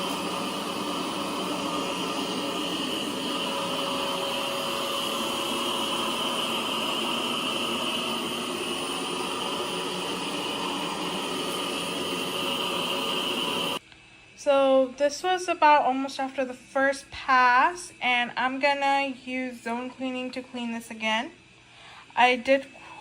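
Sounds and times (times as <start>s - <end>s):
robot vacuum whirring with high whine: 0.0s - 13.8s.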